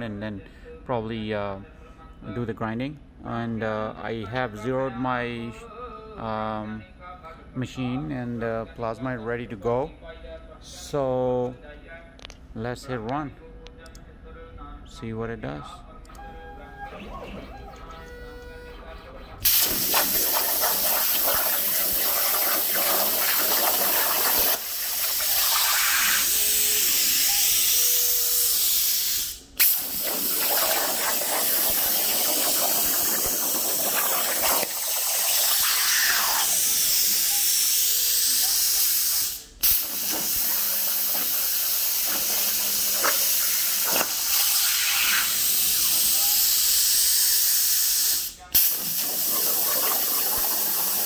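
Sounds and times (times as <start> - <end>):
plasma torch hissing: 19.4 - 51.0.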